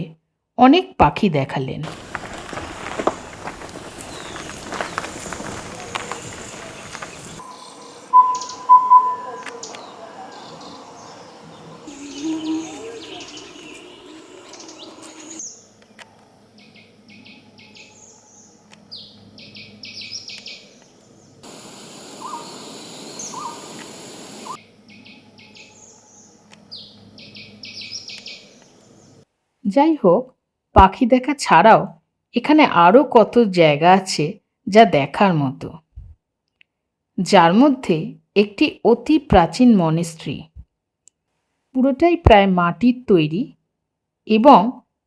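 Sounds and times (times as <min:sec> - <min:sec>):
birds chirping: 0:01.8 - 0:16.0, 0:16.6 - 0:29.2
bird whistled notes: 0:06.2 - 0:15.6, 0:22.2 - 0:24.6.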